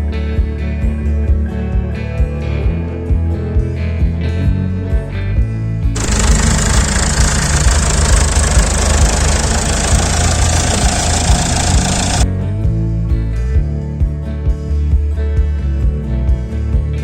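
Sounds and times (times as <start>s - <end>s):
engine running: 6.0s - 12.3s.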